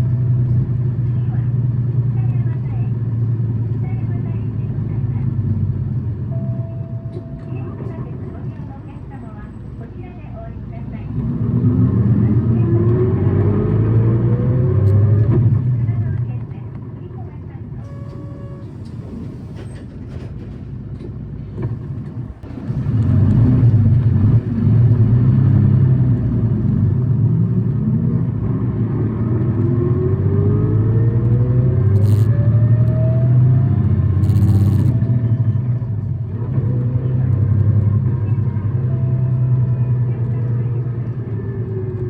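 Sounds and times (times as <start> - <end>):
bus engine revving with whine: 11.0 - 16.2, 22.4 - 42.0.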